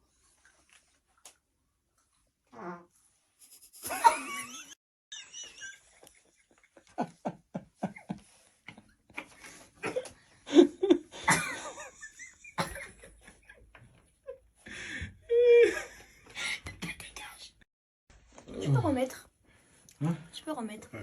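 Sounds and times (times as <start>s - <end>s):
person laughing breathily: 3.8s - 4.8s.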